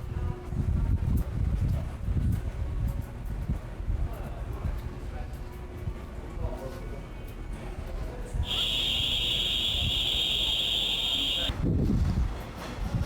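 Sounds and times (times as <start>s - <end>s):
high-pitched buzzing tone: 8.4s - 11.5s.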